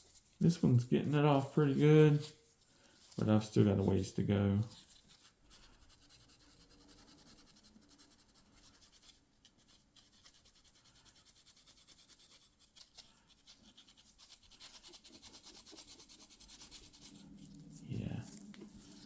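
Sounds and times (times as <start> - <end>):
hand scrubbing wooden grip: 0.0 - 7.5, 11.4 - 19.0.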